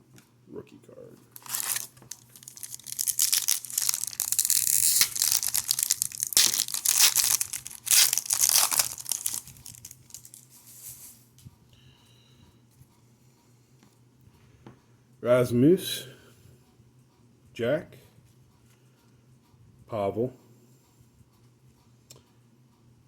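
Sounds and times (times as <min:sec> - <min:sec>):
wrapper tearing and crinkling: 0:01.3 - 0:10.5.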